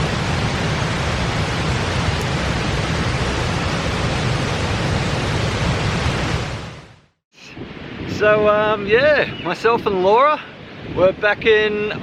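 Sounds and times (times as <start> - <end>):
rush of falling water: 0.0 - 7.0.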